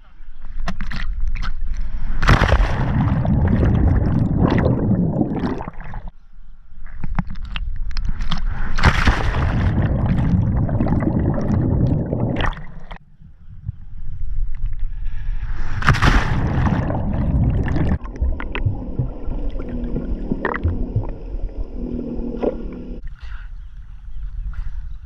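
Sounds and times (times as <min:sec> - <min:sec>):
water sloshing and splashing: 0:00.7 - 0:06.1, 0:07.1 - 0:13.0, 0:15.8 - 0:23.0.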